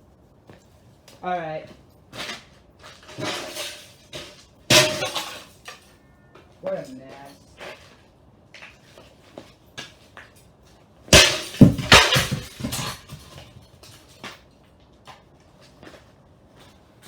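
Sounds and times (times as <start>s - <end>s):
debris clicks and knocks: 2.2s - 5.9s, 11.1s - 14.5s
computer case being smashed: 4.7s - 5.5s, 11.2s - 13.2s.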